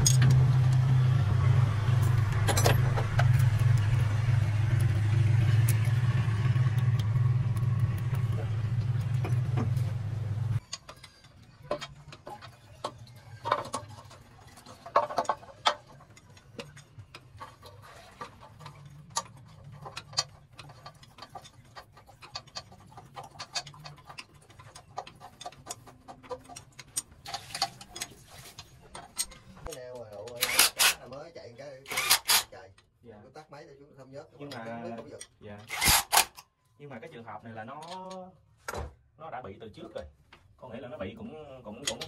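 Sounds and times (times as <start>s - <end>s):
diesel engine running: 0.0s - 10.6s
sharp clicks and metallic taps: 6.6s - 9.9s.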